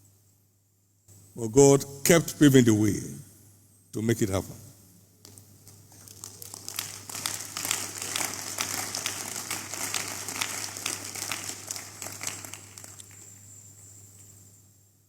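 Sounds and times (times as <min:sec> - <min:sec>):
crowd applauding: 0:05.9 - 0:13.4.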